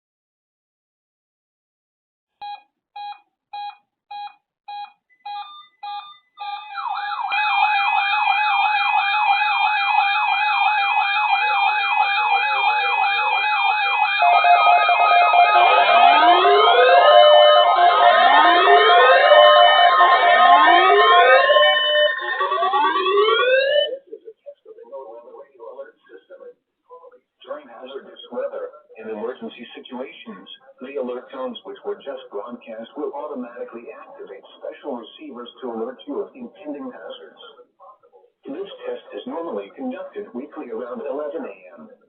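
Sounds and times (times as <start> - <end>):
weather radio alert alarms: 5.4 - 24.0
siren-like rising sweeps: 11.2 - 24.0.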